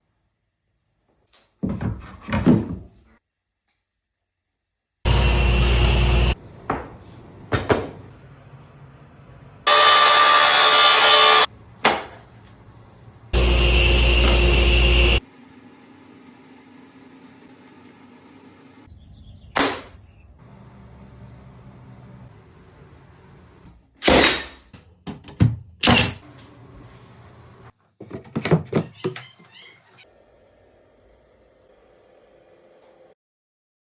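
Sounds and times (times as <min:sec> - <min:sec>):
power tool cutting wood: 0:05.1 - 0:06.4, 0:09.7 - 0:11.5, 0:13.4 - 0:15.2.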